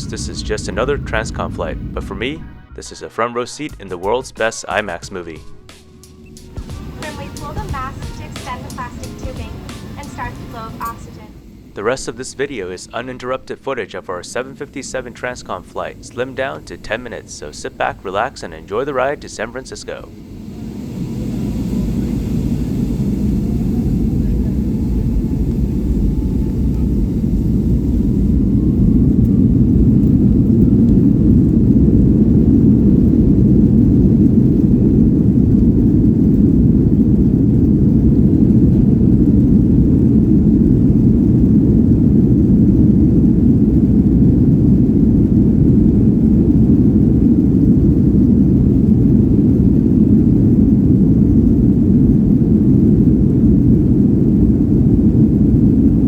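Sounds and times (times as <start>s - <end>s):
jet engines spooling up: 0.0s - 2.9s, 4.8s - 56.0s.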